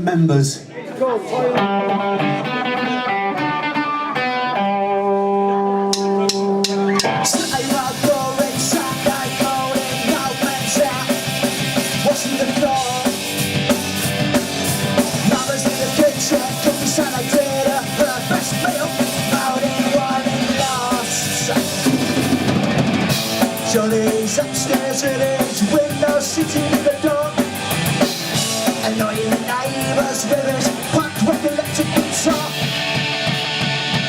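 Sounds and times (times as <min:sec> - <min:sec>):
punk rock band playing: 0:01.4 - 0:34.0
electric guitar chord ringing: 0:01.6 - 0:07.3.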